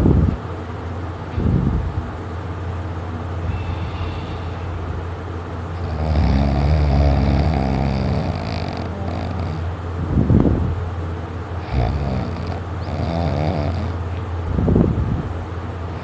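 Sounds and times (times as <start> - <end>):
steady low hum: 0.0 - 16.0
heavy snoring: 5.8 - 9.7, 11.6 - 14.0.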